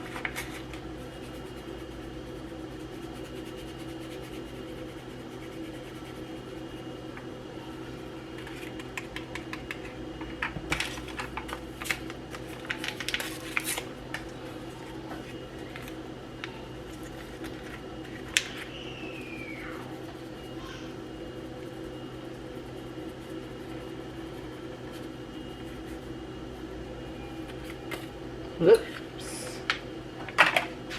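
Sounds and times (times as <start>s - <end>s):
low kitchen hum: 0.0s - 30.9s
seasoning packets crinkling: 10.8s - 14.2s.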